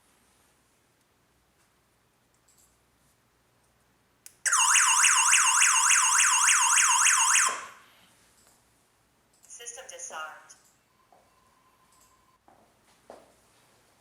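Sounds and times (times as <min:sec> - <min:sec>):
burglar alarm siren warbling: 0:04.5 - 0:07.8.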